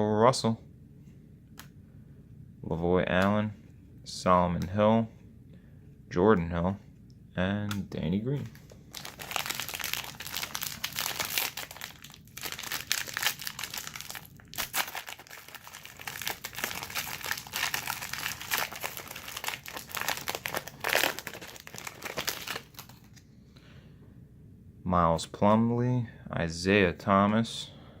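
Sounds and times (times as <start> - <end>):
plastic wrapper crinkling: 8.4 - 23.2.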